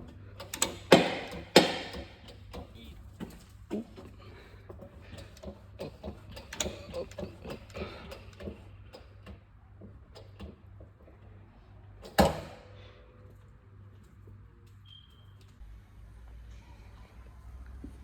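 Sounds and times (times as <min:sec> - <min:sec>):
tools clicking and tapping on metal: 0:00.0 - 0:11.2.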